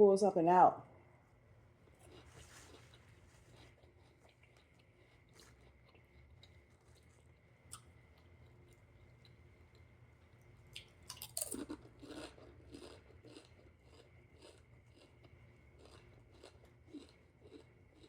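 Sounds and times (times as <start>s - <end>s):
person chewing: 1.8s - 18.0s
biting into crunchy food: 10.7s - 18.0s.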